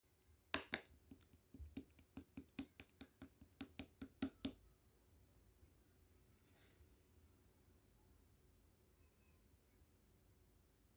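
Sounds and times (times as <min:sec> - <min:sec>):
faint soft rustle: 0:06.2 - 0:07.2.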